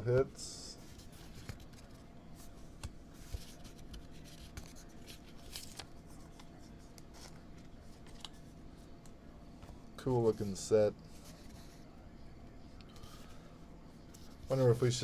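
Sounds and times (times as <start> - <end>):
cards rustling: 0.8 - 8.5.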